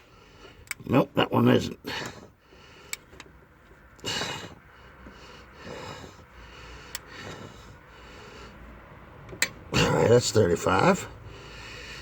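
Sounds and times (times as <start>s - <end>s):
man breathing hard: 0.0s - 0.7s, 1.8s - 3.4s, 4.0s - 9.1s, 11.1s - 12.0s.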